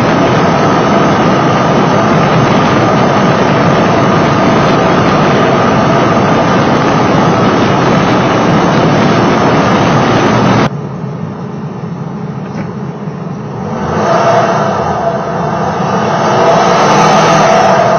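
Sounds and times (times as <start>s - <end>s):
engine ticking over: 0.0s - 10.7s
car engine running loudly: 0.0s - 17.9s
supercharger whine: 0.0s - 17.9s.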